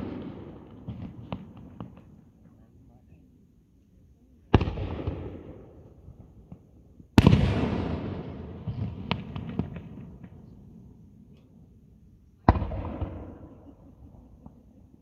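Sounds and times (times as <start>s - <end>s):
fireworks booming: 7.2s - 10.6s.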